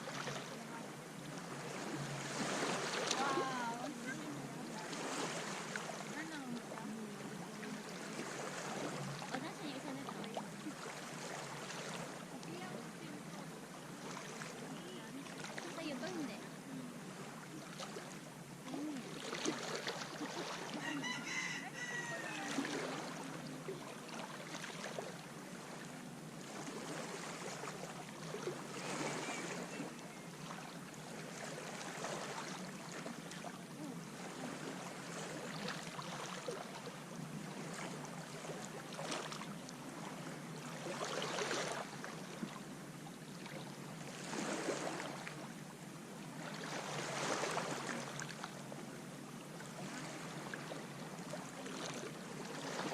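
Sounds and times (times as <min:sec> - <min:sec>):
small waves washing onto beach: 0:00.0 - 0:52.9
rooster crowing: 0:20.7 - 0:23.2.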